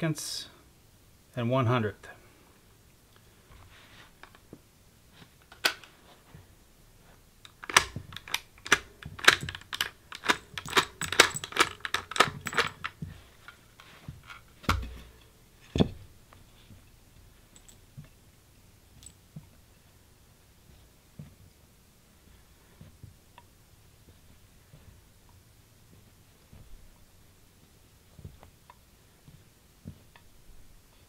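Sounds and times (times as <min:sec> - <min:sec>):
cartridges clicking into magazine: 0:07.4 - 0:13.0.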